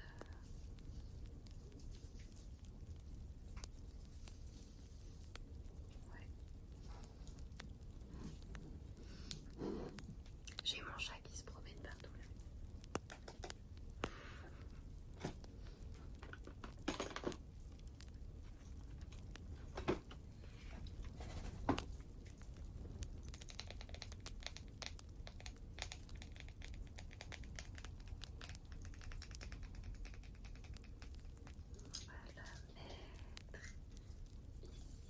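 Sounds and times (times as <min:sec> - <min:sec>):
wood fire crackling: 0:00.0 - 0:35.0
sharp clicks and taps: 0:12.0 - 0:14.2, 0:21.3 - 0:34.1.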